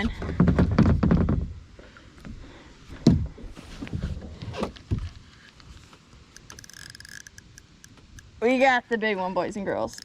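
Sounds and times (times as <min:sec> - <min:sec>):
knocks and thumps against a kayak: 0:00.0 - 0:01.6.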